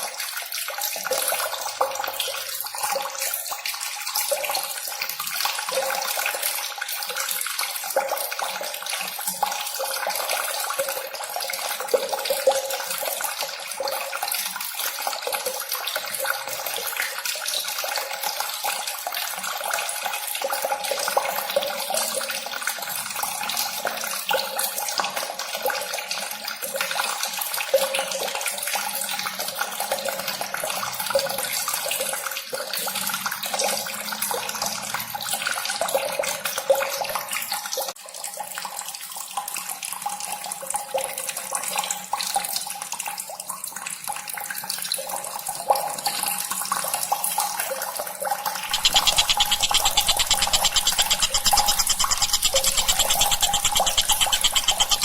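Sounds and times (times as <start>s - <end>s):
running splashing water: 48.7s - 55.0s.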